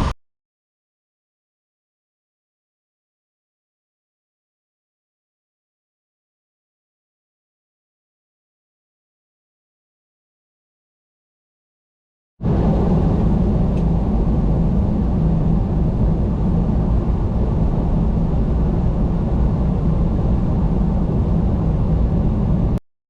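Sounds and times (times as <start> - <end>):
diesel truck engine rumble: 12.4 - 22.8
road noise: 12.4 - 22.8.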